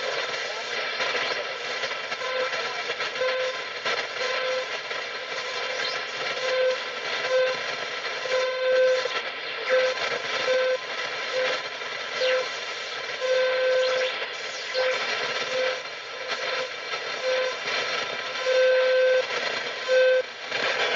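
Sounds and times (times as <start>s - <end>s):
radio static hiss: 0.0s - 20.9s.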